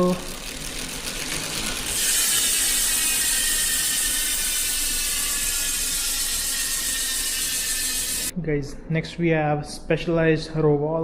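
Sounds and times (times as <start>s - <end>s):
bicycle freehub ratcheting buzz: 0.0s - 8.3s.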